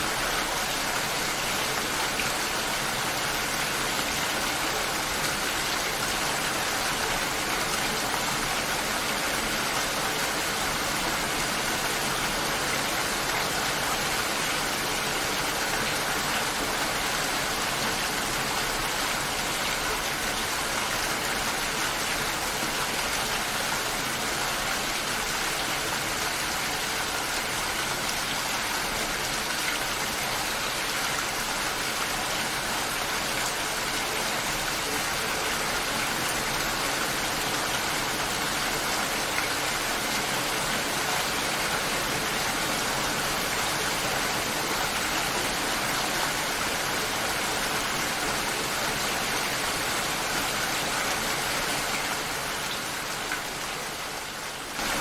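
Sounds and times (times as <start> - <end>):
steady rain: 0.0 - 55.0.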